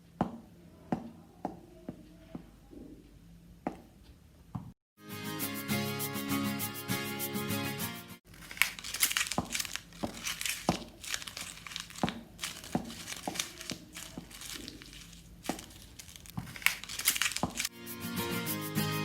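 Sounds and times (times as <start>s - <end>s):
crumpling and crinkling: 8.2s - 17.7s.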